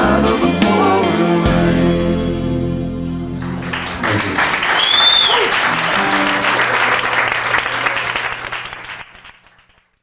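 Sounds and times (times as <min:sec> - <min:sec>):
audience applauding: 0:03.3 - 0:10.0.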